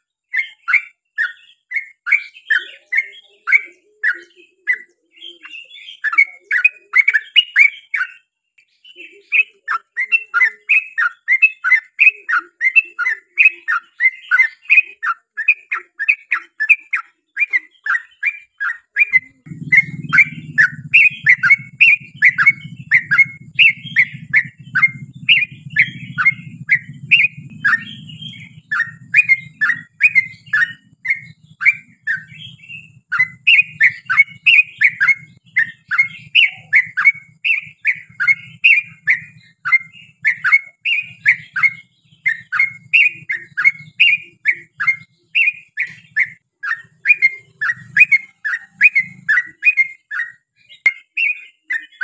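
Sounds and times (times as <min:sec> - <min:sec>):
bird chirping song: 0:00.0 - 0:52.0
low steady hum: 0:19.4 - 0:34.4.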